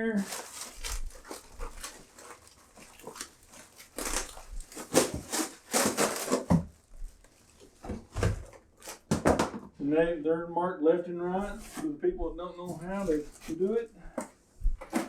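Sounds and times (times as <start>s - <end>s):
plastic packaging crinkling: 0.0s - 9.2s.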